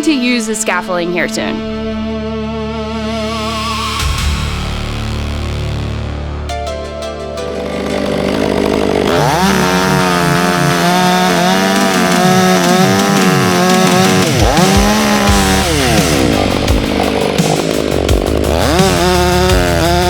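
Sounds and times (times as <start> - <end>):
chainsaw cutting log: 7.5 - 20.0.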